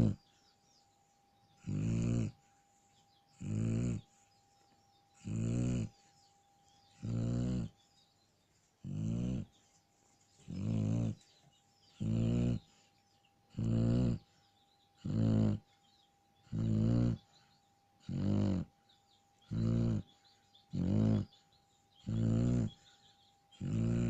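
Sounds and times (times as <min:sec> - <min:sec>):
dog snoring: 0:00.0 - 0:00.3, 0:01.6 - 0:02.5, 0:03.3 - 0:04.2, 0:05.2 - 0:06.1, 0:06.9 - 0:07.8, 0:08.8 - 0:09.6, 0:10.4 - 0:11.3, 0:11.9 - 0:12.8, 0:13.5 - 0:15.8, 0:16.4 - 0:17.4, 0:18.0 - 0:24.0.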